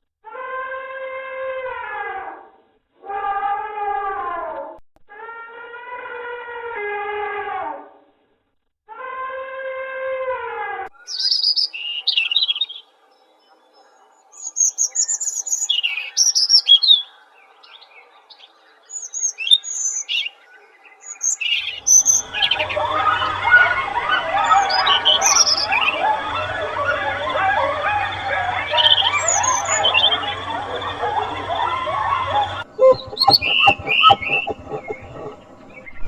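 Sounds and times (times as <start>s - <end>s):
many overlapping bird calls: 11.0s - 36.0s
songbird chirping: 11.0s - 36.0s
held call with falling end: 21.8s - 36.0s.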